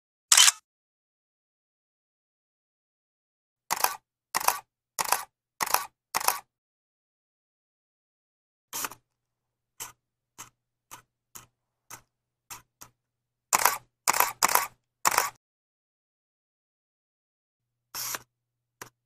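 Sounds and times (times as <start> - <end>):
camera shutter clicks: 0.3 - 0.6, 13.6 - 15.4.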